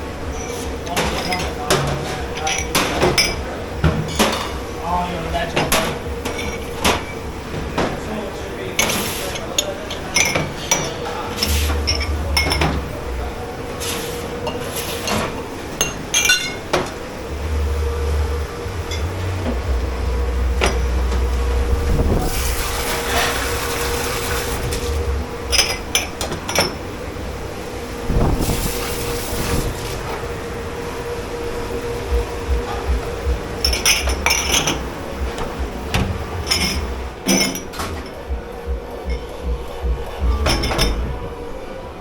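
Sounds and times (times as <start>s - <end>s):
steady hum: 0.0s - 42.0s
dishes and glassware clinking: 0.3s - 4.6s, 5.5s - 8.0s, 8.8s - 13.0s, 13.8s - 17.0s, 20.6s - 21.3s, 24.6s - 26.9s, 33.6s - 38.3s, 40.4s - 41.2s.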